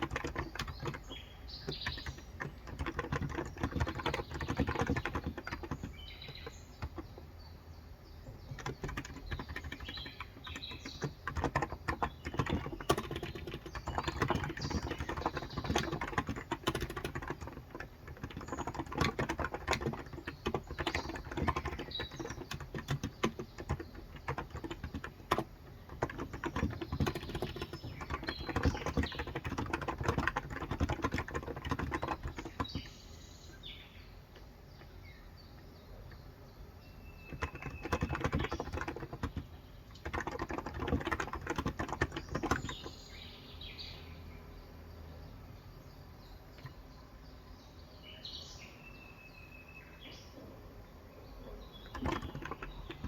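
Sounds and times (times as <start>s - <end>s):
soft keyboard typing: 0.0s - 7.3s, 8.3s - 33.0s, 37.2s - 43.0s, 46.6s - 46.9s, 51.7s - 53.0s
faint bird chirps: 0.0s - 53.0s.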